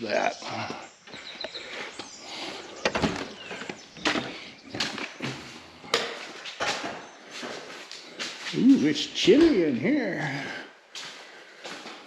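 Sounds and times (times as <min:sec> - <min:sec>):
footsteps on hard floor: 0:03.0 - 0:08.6, 0:10.9 - 0:12.0.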